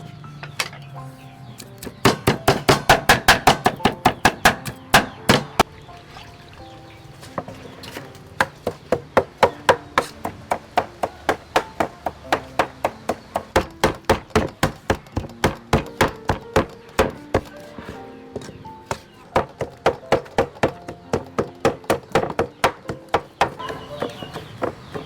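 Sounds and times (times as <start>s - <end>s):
faint background music: 0.0s - 25.0s
knife chopping on cutting board: 8.4s - 25.0s.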